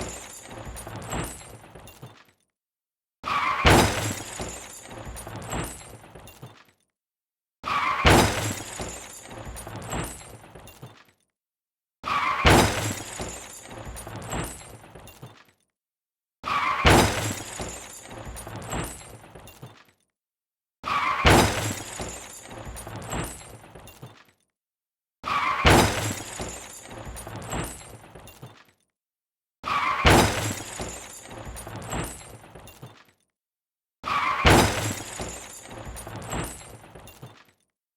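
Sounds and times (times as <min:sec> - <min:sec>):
breaking glass and debris clattering: 0:00.0 - 0:02.3, 0:03.3 - 0:06.7, 0:07.8 - 0:11.0, 0:12.3 - 0:15.4, 0:16.7 - 0:19.8, 0:21.1 - 0:24.2, 0:25.4 - 0:28.7, 0:29.7 - 0:33.1, 0:34.1 - 0:37.6
car crash smash: 0:03.3 - 0:04.8, 0:07.7 - 0:09.2, 0:12.1 - 0:13.6, 0:16.5 - 0:18.0, 0:20.9 - 0:22.4, 0:25.3 - 0:27.9, 0:29.7 - 0:32.4, 0:34.0 - 0:36.8.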